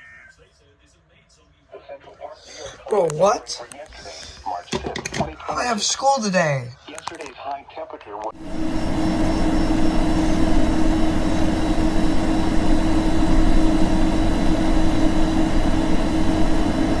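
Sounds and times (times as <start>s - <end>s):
broadcast voice: 2.2s - 7.4s
radio static and hum: 2.2s - 8.3s.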